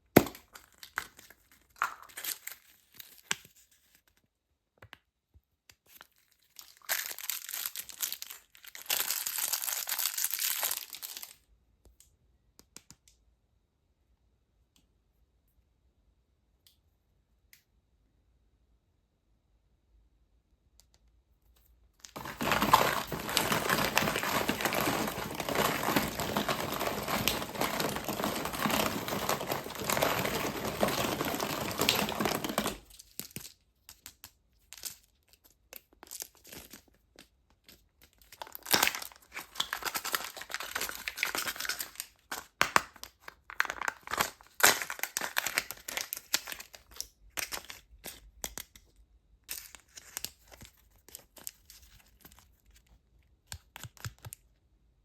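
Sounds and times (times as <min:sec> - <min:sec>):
plastic wrappers crinkling: 0:00.2 - 0:03.6, 0:06.0 - 0:11.4, 0:22.0 - 0:33.6, 0:37.6 - 0:48.6.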